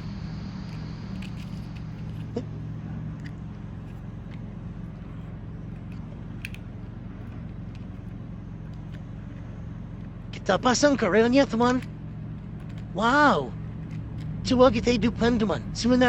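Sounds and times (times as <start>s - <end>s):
low background hum: 0.0s - 16.0s
plastic toy pieces clicking: 0.7s - 2.4s, 5.7s - 6.7s, 12.6s - 14.4s.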